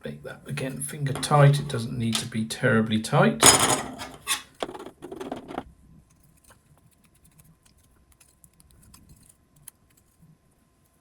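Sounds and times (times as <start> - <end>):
bolts and nuts scraping: 1.1 - 2.4, 3.4 - 5.6.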